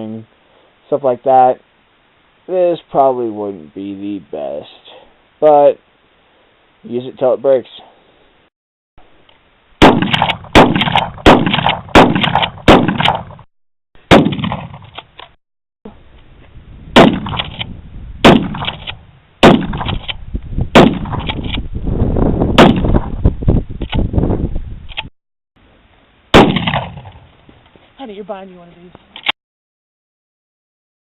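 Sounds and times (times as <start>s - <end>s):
shotgun shots: 9.8s - 13.4s, 14.1s - 14.9s, 17.0s - 17.6s, 18.2s - 20.1s, 20.7s - 21.4s, 22.6s - 23.1s, 26.3s - 27.2s.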